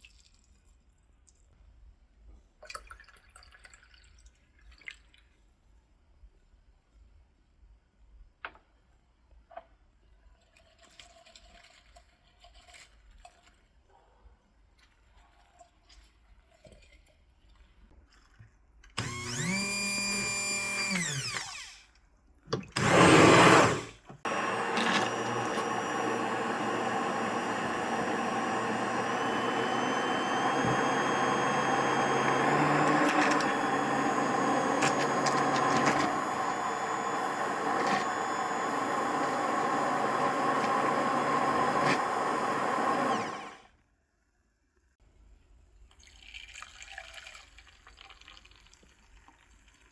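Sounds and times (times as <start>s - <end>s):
hand blender motor: 19.0s - 21.8s, 22.8s - 43.7s.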